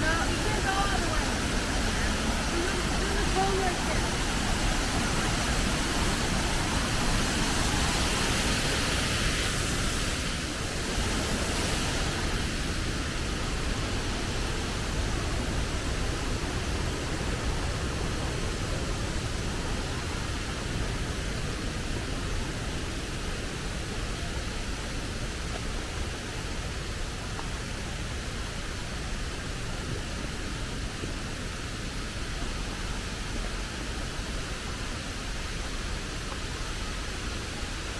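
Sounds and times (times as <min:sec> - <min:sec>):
waterfall rushing: 0:00.0 - 0:37.9.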